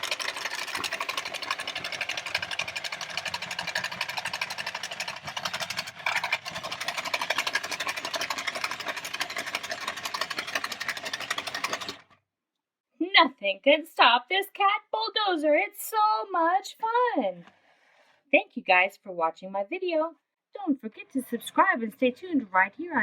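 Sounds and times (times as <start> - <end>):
toy electric motor whirring: 0.0 - 12.2.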